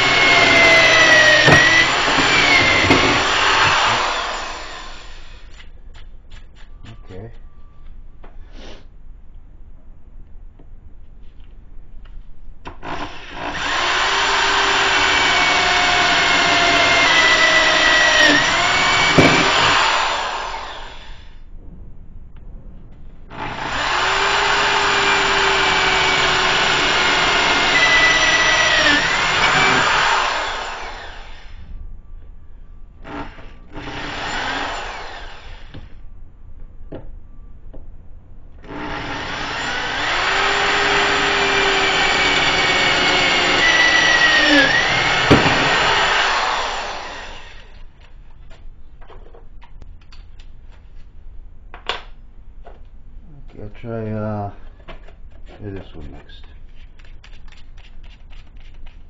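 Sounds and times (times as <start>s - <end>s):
electric drill boring into steel: 0.0s - 5.5s, 12.7s - 21.4s, 23.3s - 31.7s, 33.0s - 36.0s, 38.6s - 47.9s.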